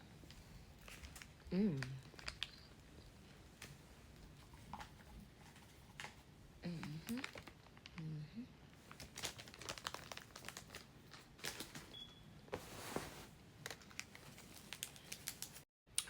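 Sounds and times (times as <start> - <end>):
crunching and chewing: 8.9 - 11.7
soft rustling: 12.5 - 13.4.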